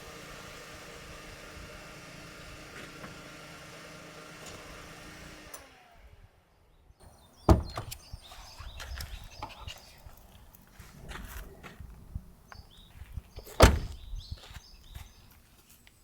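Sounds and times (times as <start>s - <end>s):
car door shutting: 7.5s - 8.0s, 13.4s - 14.0s.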